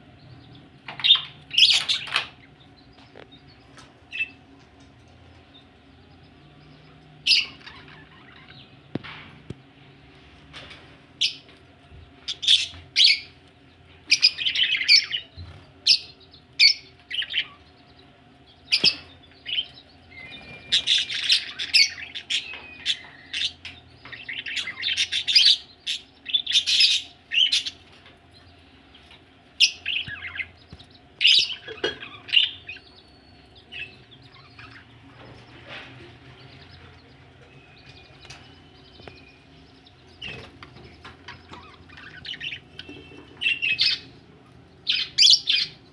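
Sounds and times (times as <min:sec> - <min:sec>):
budgerigars chirping: 0:00.4 - 0:04.4, 0:06.8 - 0:09.0, 0:12.2 - 0:13.4, 0:14.0 - 0:28.0, 0:28.9 - 0:45.9.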